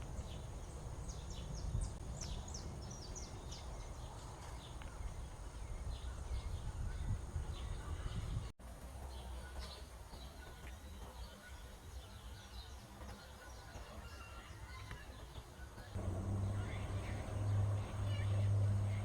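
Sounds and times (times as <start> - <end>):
birds chirping: 0.0 - 8.5, 9.1 - 19.0
steady low rumble: 16.0 - 19.0.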